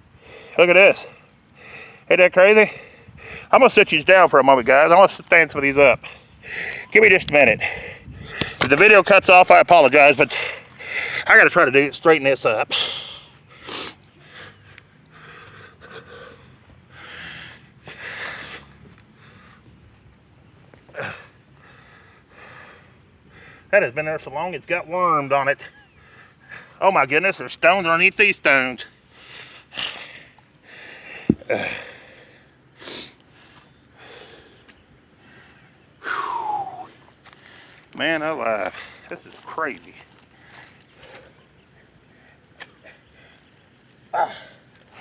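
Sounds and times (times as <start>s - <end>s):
man breathing hard: 0.0s - 3.5s, 6.0s - 7.0s, 7.6s - 8.6s, 10.3s - 11.3s, 12.7s - 19.8s, 20.9s - 23.7s, 25.7s - 26.8s, 28.9s - 38.0s, 38.7s - 39.2s, 40.1s - 45.0s
man sighing: 36.0s - 36.9s.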